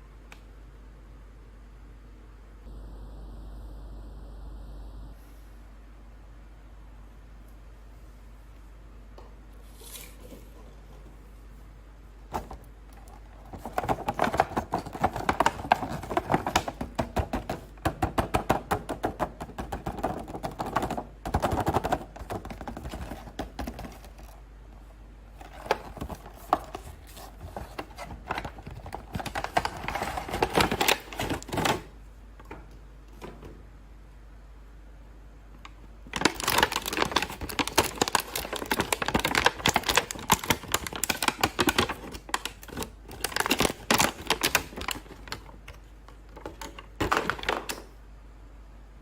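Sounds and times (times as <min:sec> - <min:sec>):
packaging clicks and crinkles: 0:12.4 - 0:24.4, 0:25.3 - 0:31.9, 0:35.6 - 0:47.9.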